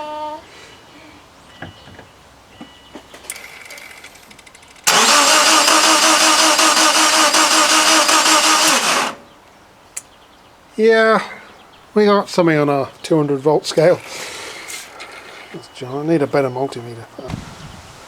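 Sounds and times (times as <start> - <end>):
starter motor cranking: 3.4 - 9.2.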